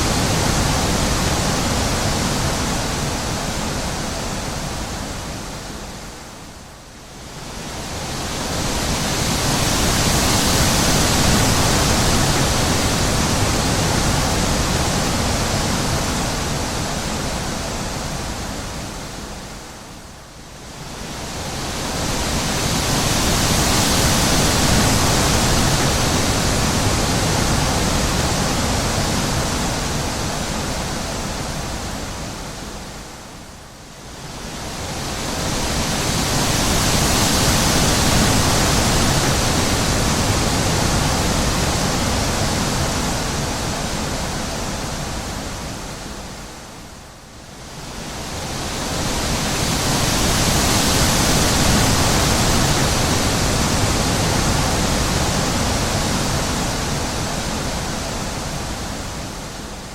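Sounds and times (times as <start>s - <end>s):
wind blowing: 20.7s - 47.0s, 47.6s - 59.9s.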